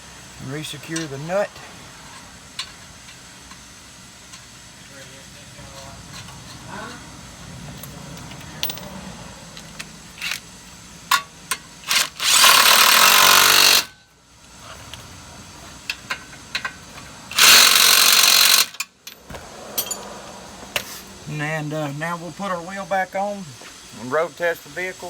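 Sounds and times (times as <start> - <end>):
impact wrench hammering: 8.6 - 9.0, 11.1 - 14.0, 15.9 - 20.0.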